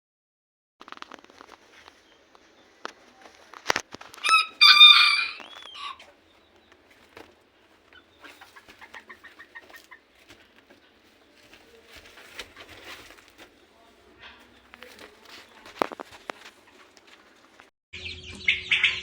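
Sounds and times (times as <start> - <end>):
faint clucking: 1.4 - 17.7
rooster crowing: 4.2 - 6.1.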